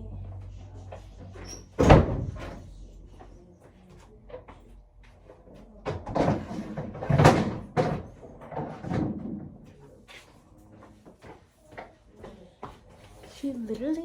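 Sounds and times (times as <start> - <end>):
knocks and thumps: 5.8 - 9.7.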